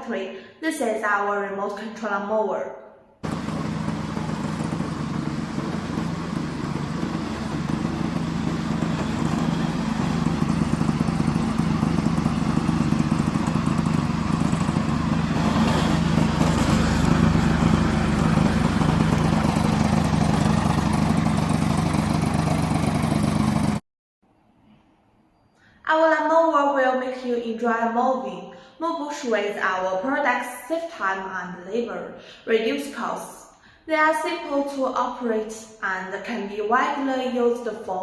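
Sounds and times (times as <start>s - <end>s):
lawn mower engine running: 3.2s - 23.8s.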